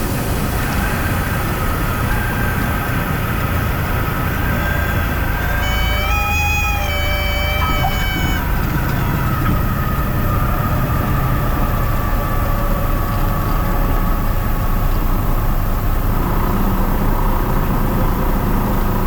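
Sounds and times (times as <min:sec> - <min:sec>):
aircraft engine drone: 0:03.0 - 0:12.3
high warning tone: 0:05.0 - 0:09.2.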